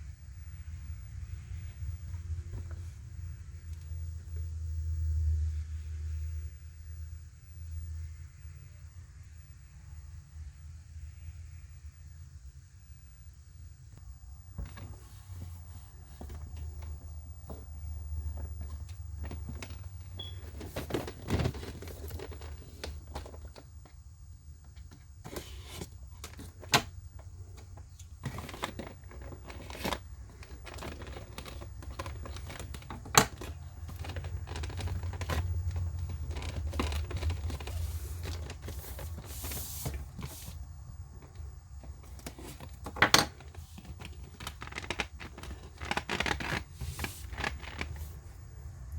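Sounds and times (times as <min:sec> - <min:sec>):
packaging rustling and crinkling: 0:14.6 - 0:23.9, 0:24.8 - 0:40.6, 0:41.2 - 0:48.2.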